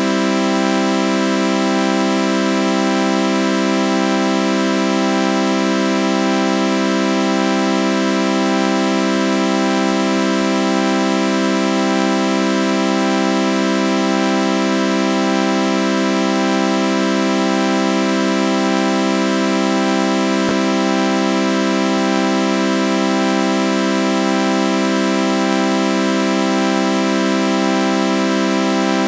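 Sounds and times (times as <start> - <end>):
sustained synthesizer chord: 20.2 - 23.1.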